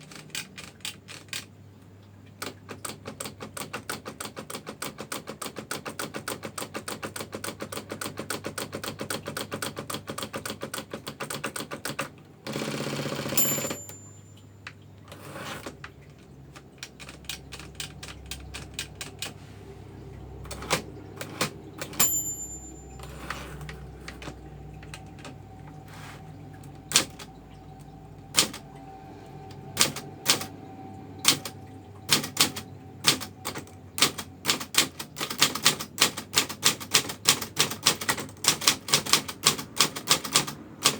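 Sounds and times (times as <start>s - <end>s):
typewriter key strikes: 0.0s - 1.5s, 13.2s - 14.2s, 15.1s - 19.3s, 20.5s - 25.4s, 26.8s - 28.6s, 29.8s - 30.5s, 32.1s - 40.9s
typewriter carriage return: 0.0s - 1.6s, 2.4s - 14.2s, 15.1s - 19.4s, 20.4s - 40.9s
typewriter margin bell ding: 12.6s - 14.4s, 20.5s - 25.2s.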